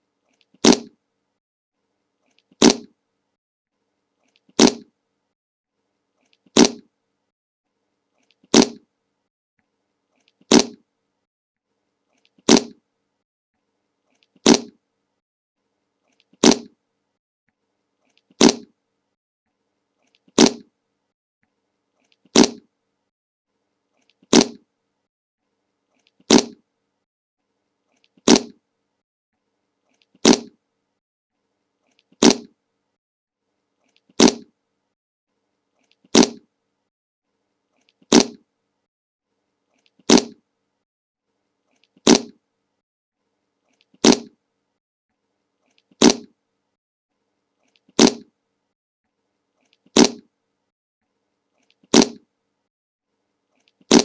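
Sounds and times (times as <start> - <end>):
fart sound effect: 0.6 - 1.0, 2.6 - 2.9, 4.6 - 4.9, 6.5 - 6.9, 8.5 - 8.8, 10.5 - 10.8, 12.4 - 12.8, 14.4 - 14.8, 16.4 - 16.8, 18.3 - 18.7, 20.4 - 20.7, 22.3 - 22.7, 24.3 - 24.6, 26.3 - 26.6, 28.2 - 28.6, 30.2 - 30.6, 32.2 - 32.5, 34.2 - 34.5, 36.1 - 36.4, 38.1 - 38.4, 40.1 - 40.4, 42.0 - 42.4, 44.0 - 44.3, 46.0 - 46.3, 48.0 - 48.2, 50.0 - 50.3, 51.9 - 52.2.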